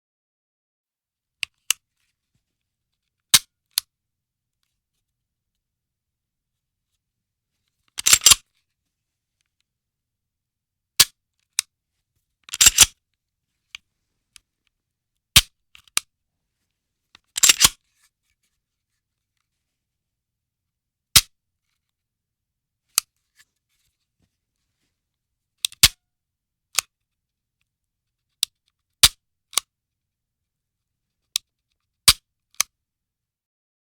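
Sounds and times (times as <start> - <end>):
pistol action clicking: 8.0 - 8.4, 12.5 - 12.9.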